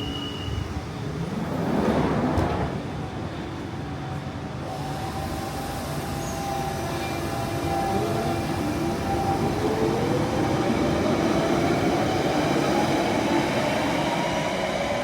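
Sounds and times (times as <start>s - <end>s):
train rumble: 0.0s - 15.0s.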